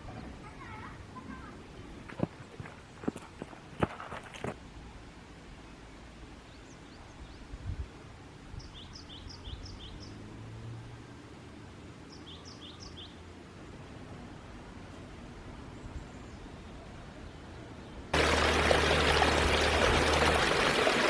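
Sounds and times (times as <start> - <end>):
low hum: 18.2 - 21.0.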